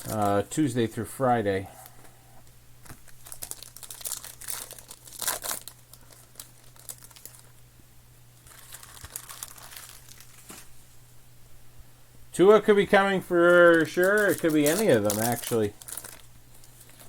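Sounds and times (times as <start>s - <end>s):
foil wrappers crinkling and tearing: 0.0s - 0.5s, 2.8s - 7.6s, 8.4s - 10.7s, 13.4s - 17.0s
faint low hum: 0.0s - 17.0s.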